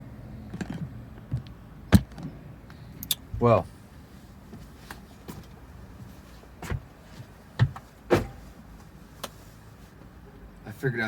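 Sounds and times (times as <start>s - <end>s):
knocks and clunks: 0.5s - 2.4s, 6.6s - 8.6s.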